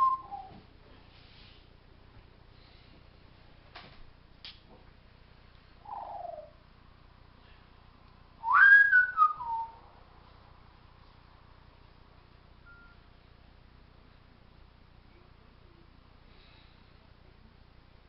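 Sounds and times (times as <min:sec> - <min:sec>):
parrot whistling: 0:00.0 - 0:00.6, 0:08.4 - 0:09.8.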